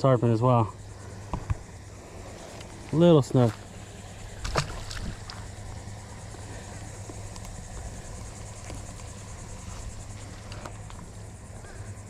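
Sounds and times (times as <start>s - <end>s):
insects trilling: 0.0s - 12.0s
low hum: 0.4s - 12.0s
faint ticks: 4.3s - 11.8s.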